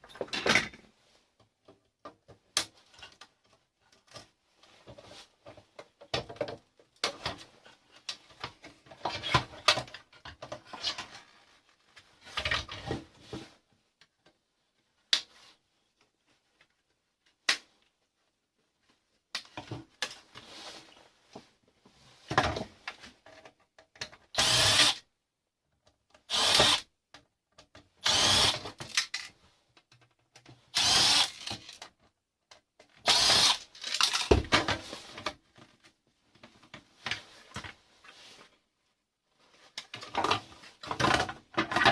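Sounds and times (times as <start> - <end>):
power drill bursts: 24.4 - 25.0, 26.3 - 26.8, 28.0 - 28.6, 30.7 - 31.5, 33.0 - 33.6
rattling and handling noises: 39.4 - 41.9.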